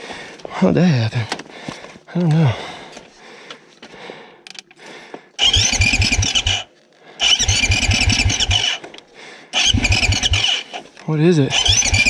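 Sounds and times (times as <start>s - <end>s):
motorcycle starter cranking engine: 5.4s - 8.8s, 9.6s - 12.0s.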